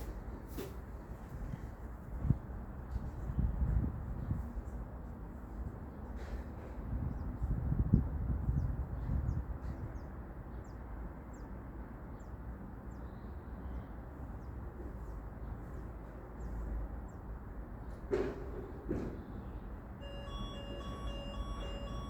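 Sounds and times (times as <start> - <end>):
wind rumble on microphone: 0.9 - 5.9, 6.6 - 10.2.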